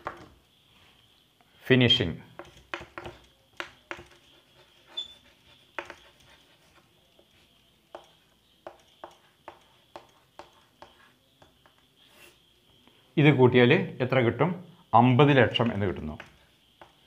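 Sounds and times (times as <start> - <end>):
faint irregular clicks and taps: 2.3 - 4.3, 5.7 - 11.9, 15.6 - 17.0.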